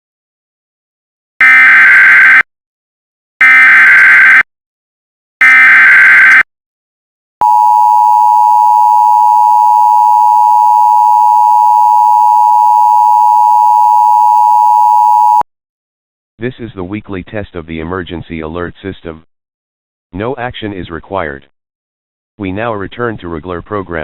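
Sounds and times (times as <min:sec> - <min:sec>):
steady two-tone attention signal: 0:07.4 - 0:15.4.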